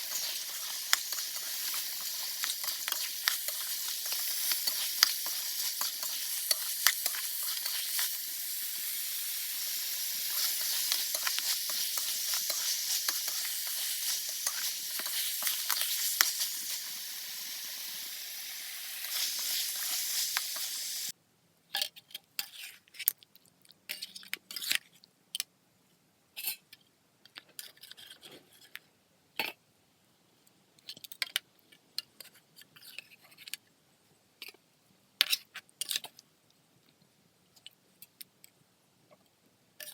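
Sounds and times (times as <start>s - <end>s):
stirring clicks and scrapes: 0.0s - 8.2s, 9.7s - 16.9s
curry sizzling in a pan: 0.0s - 21.2s.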